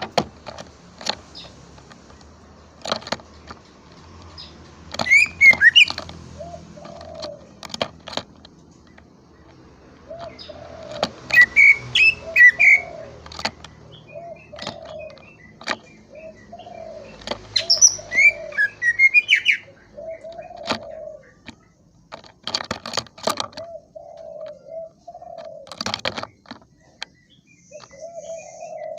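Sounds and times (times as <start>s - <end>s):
sharp clicks: 0.0s - 19.4s, 25.4s - 27.2s.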